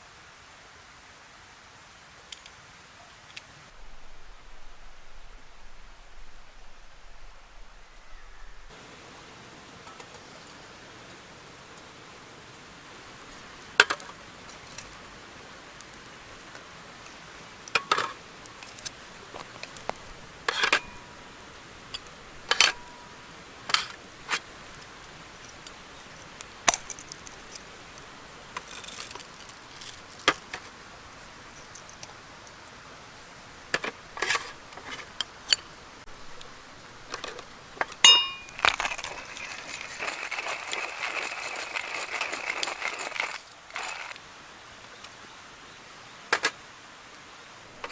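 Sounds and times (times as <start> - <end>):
steady outdoor hiss: 0.0 - 47.9
metallic clinks and knocks: 37.9 - 39.4.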